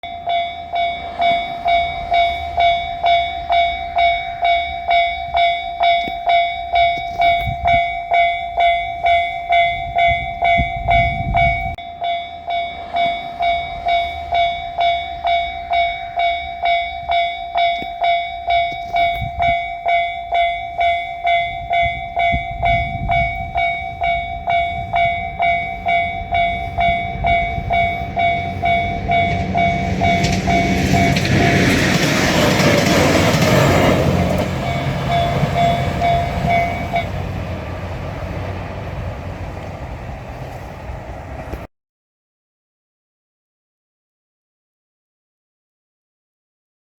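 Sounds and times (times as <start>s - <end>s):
railroad crossing bell ringing: 0.0s - 41.6s
low rumble: 18.4s - 41.7s.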